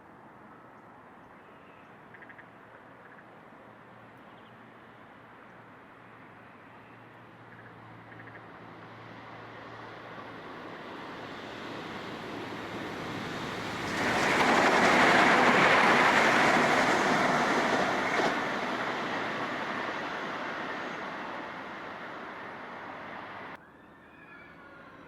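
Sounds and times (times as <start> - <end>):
diesel railcar passing: 4.7 - 23.6.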